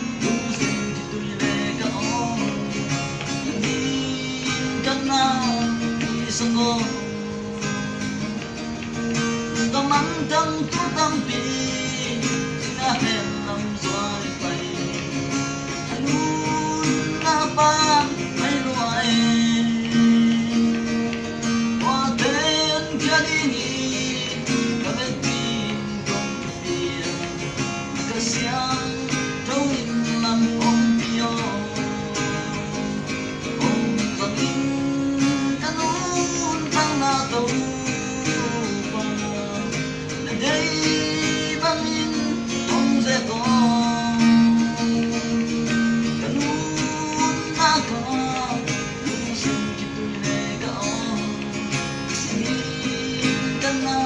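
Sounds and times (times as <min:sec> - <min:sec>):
acoustic guitar accompaniment: 0:00.0 - 0:54.0.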